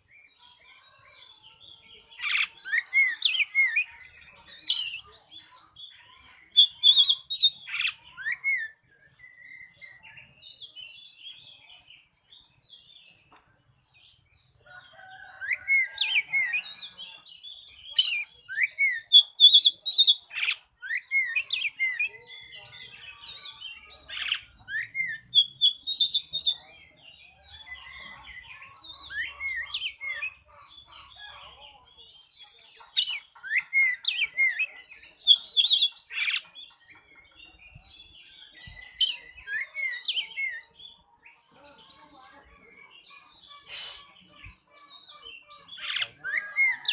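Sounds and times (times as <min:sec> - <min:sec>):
bird singing whistled phrases: 0:17.5 - 0:22.1.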